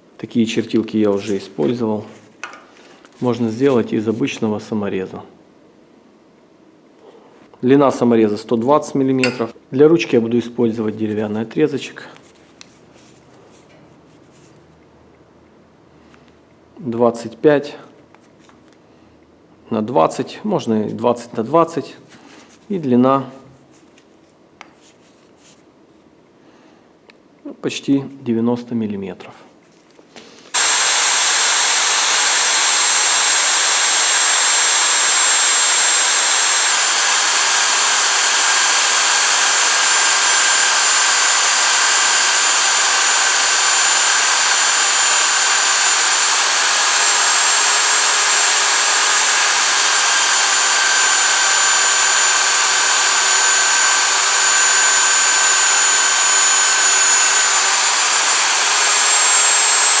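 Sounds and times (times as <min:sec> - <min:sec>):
power tool motor whine: 0:30.5 - 1:00.0.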